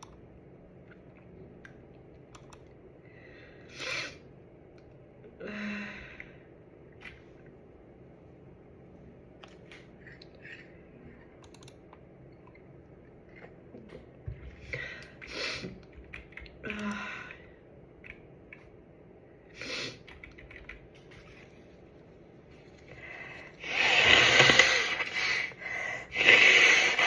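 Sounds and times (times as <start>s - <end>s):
small clicks: 0.9s - 2.7s, 11.4s - 12.6s
person breathing hard and sniffing: 22.9s - 27.0s.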